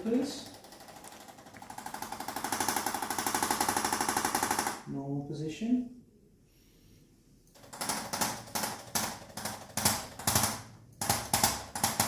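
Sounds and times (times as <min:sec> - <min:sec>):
rapid sharp clicks: 0:00.3 - 0:04.8, 0:07.5 - 0:12.0.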